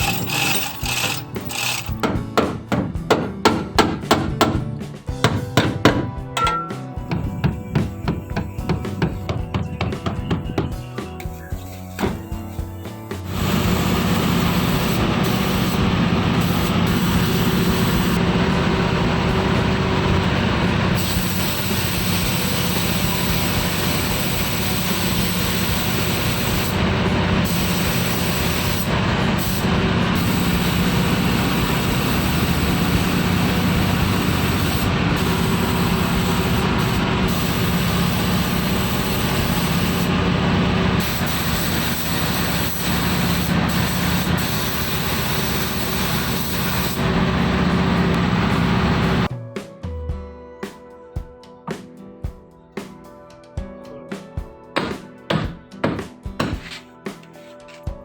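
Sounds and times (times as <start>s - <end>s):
compressed air hissing: 7.0s - 18.2s, 20.5s - 49.3s
low machine hum: 13.3s - 21.0s.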